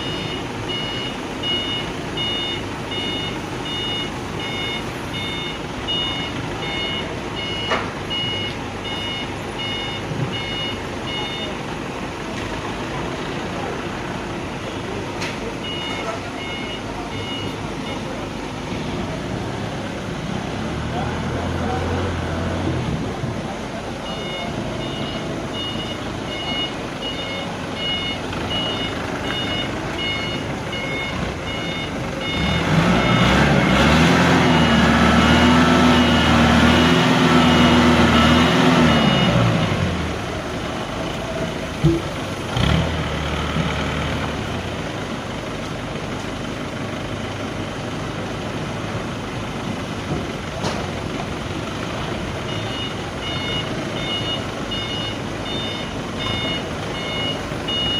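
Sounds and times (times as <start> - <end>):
reversing alarm beeping: 0.0 - 11.6, 15.6 - 18.2, 24.0 - 39.7, 52.4 - 57.9
heavy vehicle engine revving: 0.0 - 57.9.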